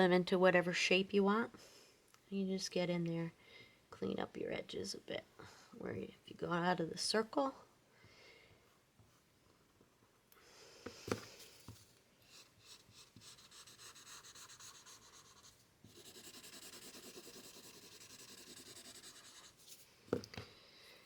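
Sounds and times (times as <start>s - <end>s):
rubbing strokes on paper: 12.3s - 19.9s.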